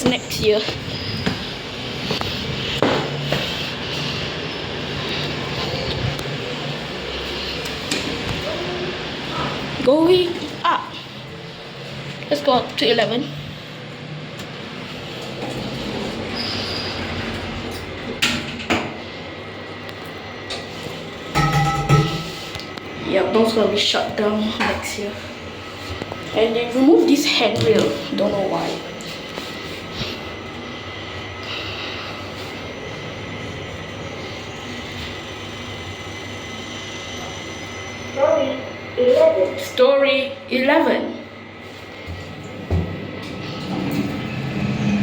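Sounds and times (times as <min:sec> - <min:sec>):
lift running rumble and hiss: 0:00.0 - 0:45.0
high whine: 0:13.3 - 0:45.0.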